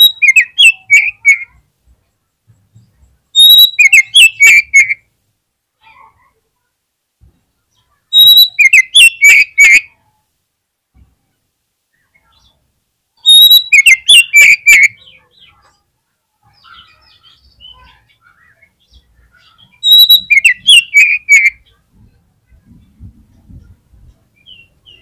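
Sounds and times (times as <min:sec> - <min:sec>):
bird song bursts: 0:00.0 - 0:01.6, 0:02.8 - 0:05.0, 0:07.7 - 0:09.9, 0:13.2 - 0:15.7, 0:16.4 - 0:21.8, 0:24.3 - 0:25.0
faint bird chirps: 0:00.0 - 0:05.1, 0:07.5 - 0:10.3, 0:11.0 - 0:25.0.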